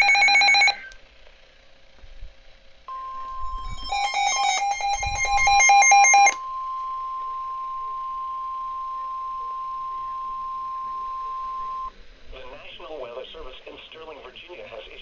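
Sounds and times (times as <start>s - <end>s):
steady warning alarm tone: 0.0s - 0.9s, 2.9s - 11.9s
rapid electronic beeping: 2.9s - 6.4s.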